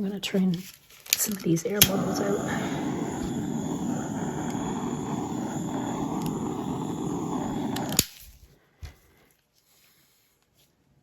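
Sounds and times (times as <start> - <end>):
handheld tool rushing noise: 1.7 - 8.2.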